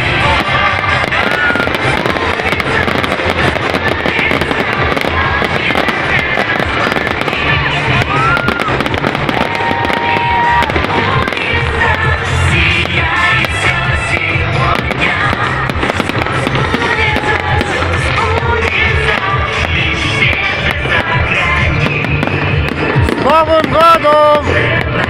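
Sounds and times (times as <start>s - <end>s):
fireworks crackling and banging: 0.0s - 25.0s.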